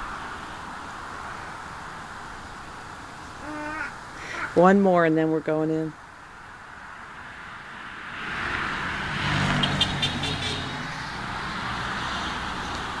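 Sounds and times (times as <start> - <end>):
car driving past: 7.0 - 13.0.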